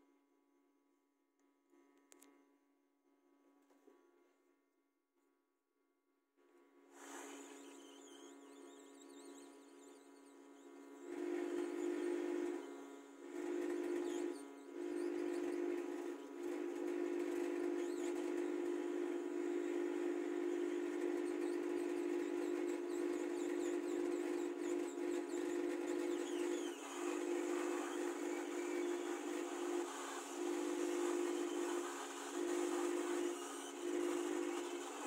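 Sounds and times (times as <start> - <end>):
hot air station fan hum: 7.0 - 35.0.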